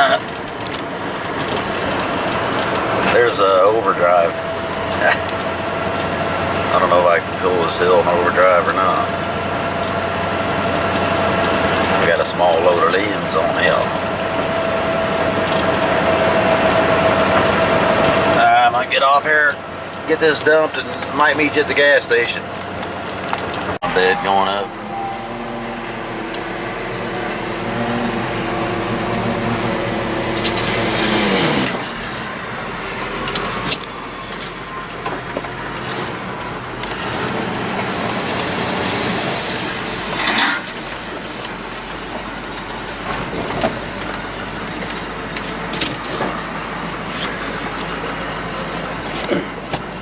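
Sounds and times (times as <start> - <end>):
knocks and clatters: 0.0 - 3.4
hydraulic pump whining: 0.0 - 50.0
truck engine running: 0.0 - 50.0
brush sliding out of truck bed: 1.4 - 3.2, 24.8 - 32.3, 36.8 - 42.0.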